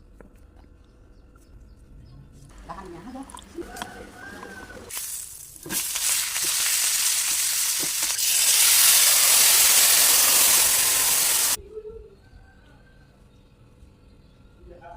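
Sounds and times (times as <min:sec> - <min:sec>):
food sizzling in hot oil: 0:04.9 - 0:11.6.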